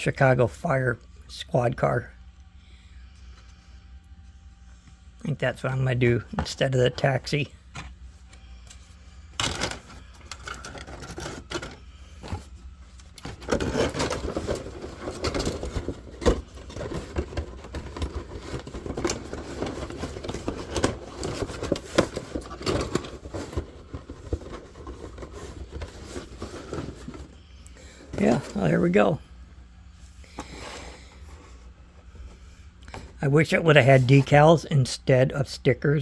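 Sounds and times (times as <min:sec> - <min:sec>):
plastic parts rustling and clicking: 0:08.7 - 0:27.4.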